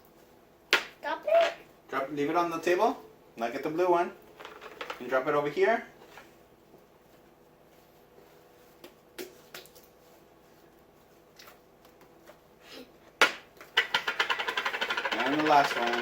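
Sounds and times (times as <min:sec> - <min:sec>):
plastic cups clicking and tapping: 0:13.6 - 0:16.0.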